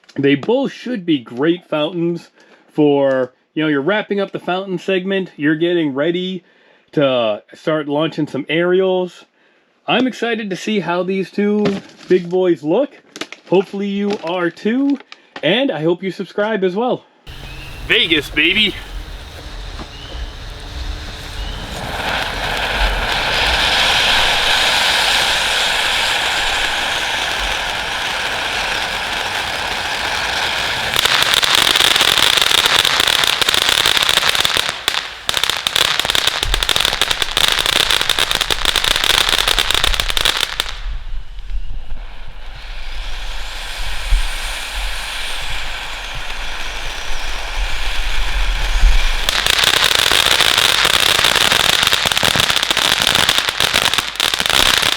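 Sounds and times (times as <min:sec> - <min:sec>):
fireworks crackling: 0:17.3 - 0:54.9
fireworks fountain hissing: 0:17.3 - 0:54.9.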